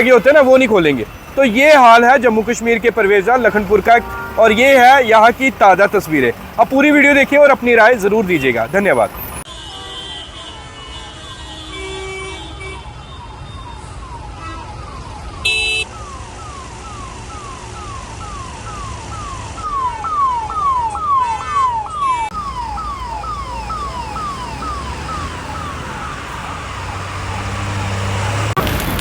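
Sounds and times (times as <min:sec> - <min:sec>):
ambulance siren: 0:00.0 - 0:09.5, 0:12.5 - 0:29.0
traffic rumble: 0:00.0 - 0:09.5, 0:12.1 - 0:29.0
vehicle horn honk: 0:03.9 - 0:05.2, 0:09.5 - 0:13.0, 0:15.4 - 0:15.9.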